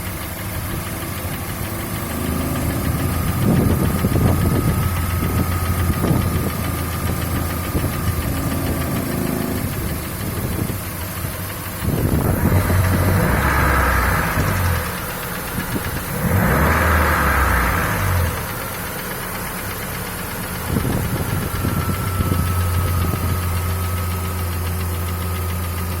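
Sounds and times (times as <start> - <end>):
petrol engine running with a knock: 0.0 - 26.0.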